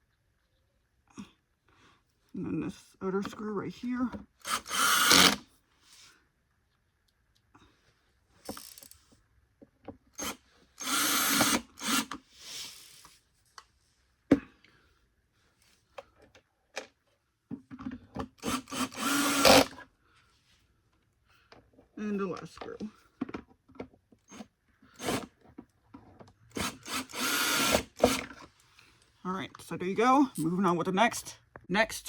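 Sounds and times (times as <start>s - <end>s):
electric drill driving screws: 4.4s - 5.4s, 8.5s - 9.0s, 10.2s - 12.2s, 18.4s - 19.8s, 24.3s - 25.3s, 26.5s - 28.4s.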